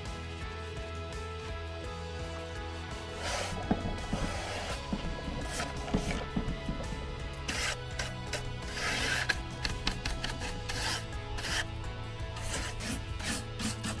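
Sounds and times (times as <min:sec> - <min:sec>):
soft background music: 0:00.0 - 0:14.0
scraping strokes on wood: 0:02.9 - 0:14.0.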